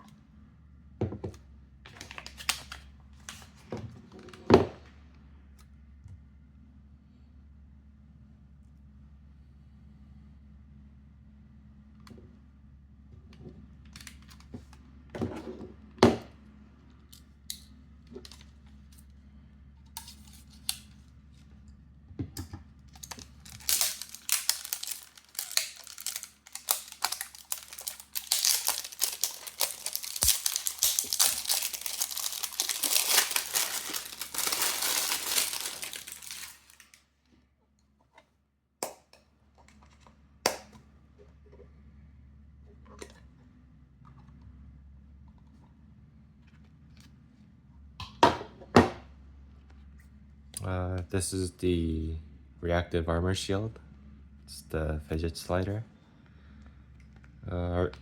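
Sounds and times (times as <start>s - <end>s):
packaging crinkling and tearing: 1.9s - 3.6s, 20.0s - 21.0s, 22.9s - 37.0s.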